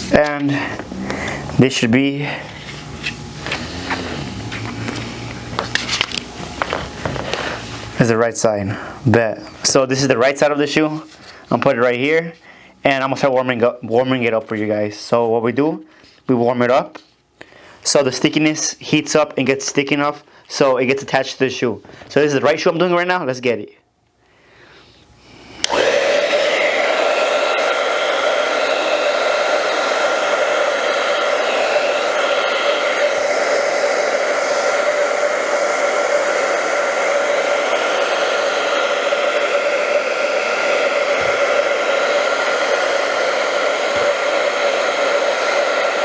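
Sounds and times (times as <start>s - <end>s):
blow dryer running: 0.0s - 10.8s, 25.3s - 46.0s.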